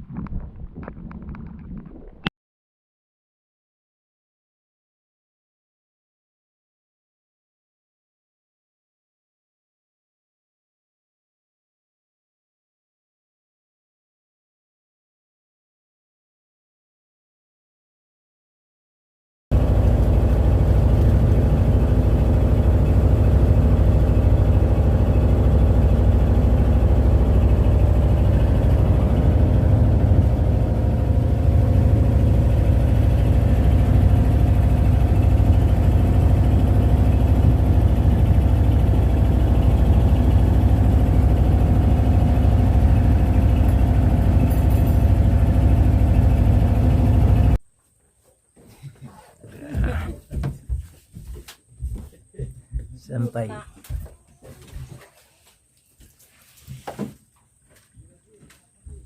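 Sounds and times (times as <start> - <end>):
boat engine droning: 19.5 - 47.6.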